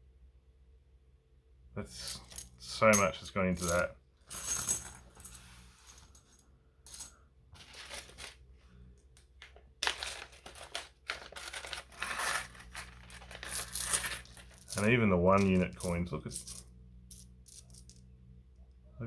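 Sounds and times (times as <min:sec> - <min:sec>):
metal coins clinking: 0:02.0 - 0:08.4, 0:09.8 - 0:18.0.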